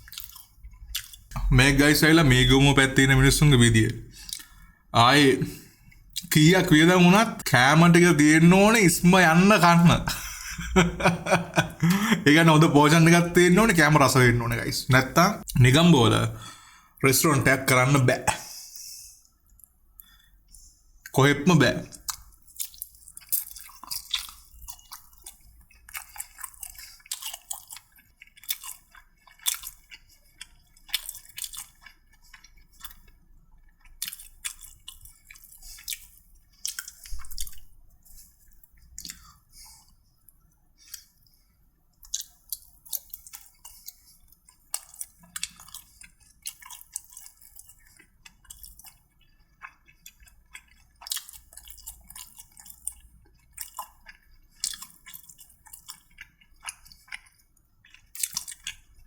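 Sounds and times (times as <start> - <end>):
person chewing with wet smacks: 0.0 - 1.5, 3.8 - 4.8, 18.3 - 21.2, 21.9 - 59.0.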